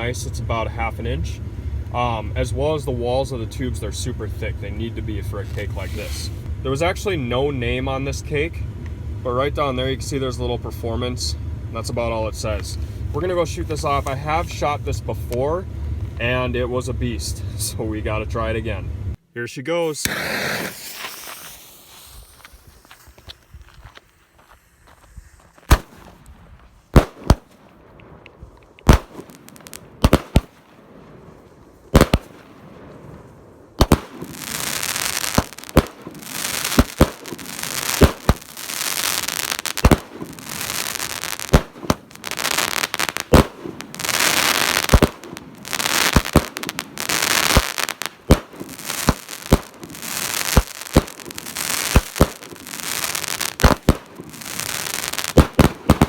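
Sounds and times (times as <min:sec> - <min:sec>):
firework crackling: 0:04.8 - 0:06.5, 0:20.0 - 0:56.0
firework shots: 0:20.0 - 0:56.0.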